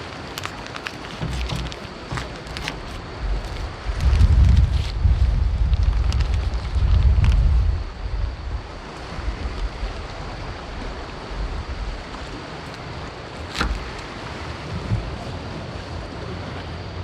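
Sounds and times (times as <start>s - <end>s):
wind rumbling on microphone: 0.0s - 17.0s
sea surf: 7.6s - 17.0s.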